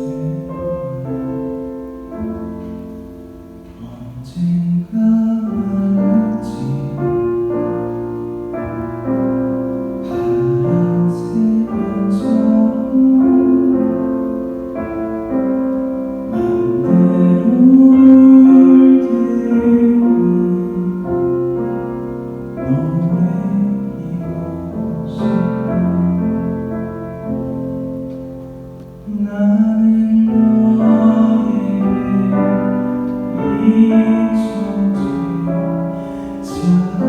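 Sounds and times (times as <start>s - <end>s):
man singing a slow ballad: 0.0s - 27.6s, 29.0s - 37.0s
piano accompaniment: 0.0s - 37.0s.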